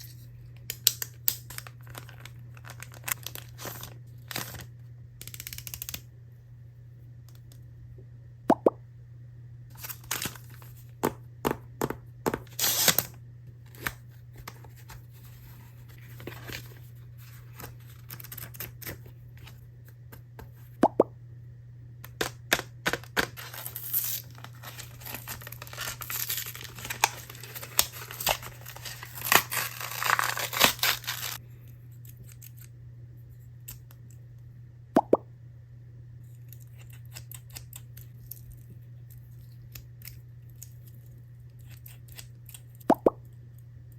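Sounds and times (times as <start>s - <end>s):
faint low hum: 0.0s - 43.9s
plastic packaging crinkling and tearing: 0.9s - 6.0s, 9.7s - 10.9s, 12.5s - 13.1s, 22.2s - 31.4s.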